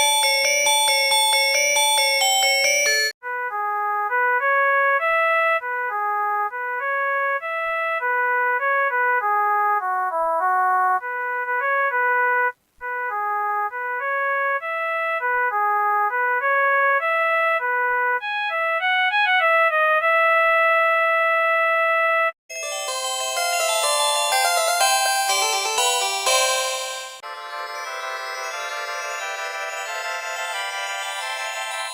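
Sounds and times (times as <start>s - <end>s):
bright ringtone with chords: 0.0s - 3.2s, 22.5s - 31.9s
synthesized phone ringtone melody: 0.0s - 3.2s, 22.5s - 31.9s.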